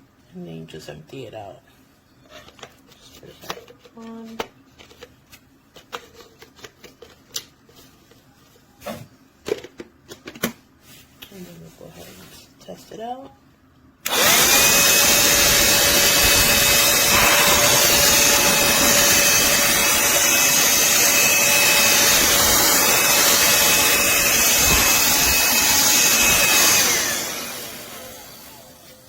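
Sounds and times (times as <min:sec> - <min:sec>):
handheld vacuum running: 0:14.0 - 0:29.0.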